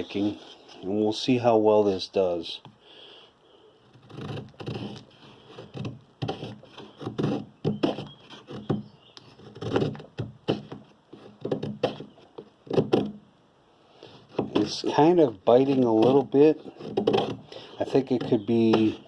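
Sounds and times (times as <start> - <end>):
knife scraping wood: 3.8 - 13.2, 14.0 - 19.0.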